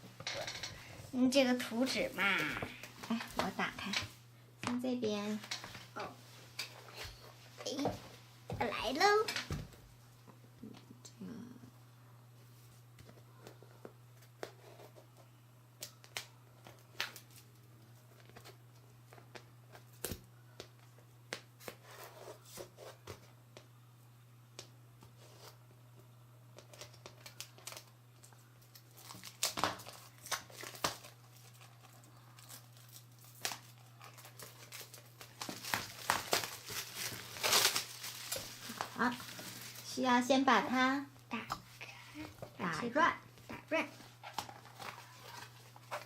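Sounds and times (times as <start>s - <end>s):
packaging tearing and crinkling: 26.7s - 39.9s.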